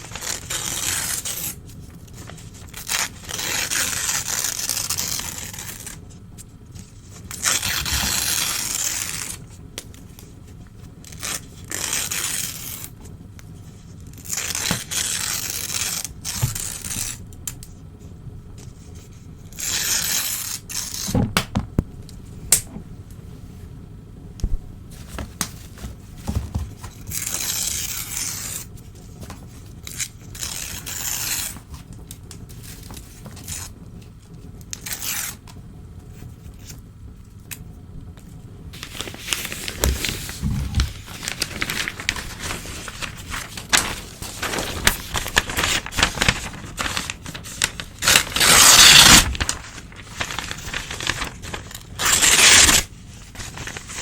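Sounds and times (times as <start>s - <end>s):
newspaper tearing: 0.0s - 6.0s, 7.2s - 9.4s, 11.0s - 13.0s, 14.1s - 17.2s, 25.4s - 28.7s, 29.8s - 31.7s, 38.8s - 54.0s.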